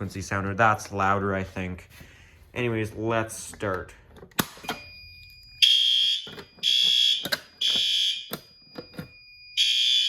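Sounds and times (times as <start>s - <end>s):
fire alarm horn blasts: 5.6s - 8.5s, 9.5s - 10.0s.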